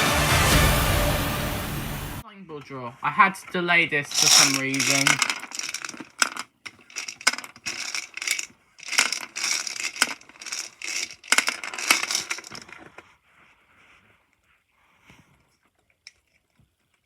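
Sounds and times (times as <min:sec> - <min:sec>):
faint rustling: 0:03.5 - 0:16.9
balls rattling in a container: 0:04.1 - 0:13.0.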